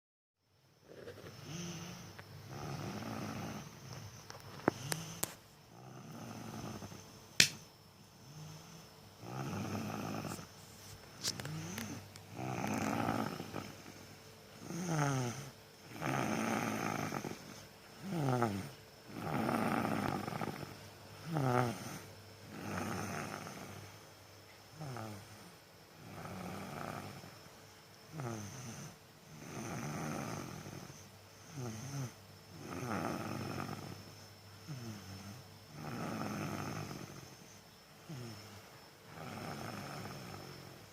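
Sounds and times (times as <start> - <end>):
child snoring: 0.8 - 7.5, 8.2 - 24.0, 24.7 - 27.5, 28.1 - 40.9
sharp click: 7.4 - 7.6.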